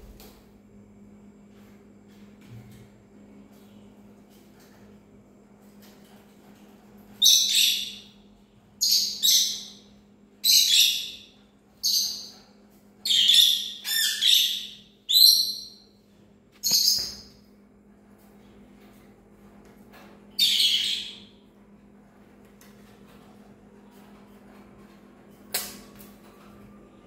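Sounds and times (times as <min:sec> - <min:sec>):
faint steady hum: 0:00.0 - 0:27.0
parrot shrill calls: 0:13.1 - 0:15.7.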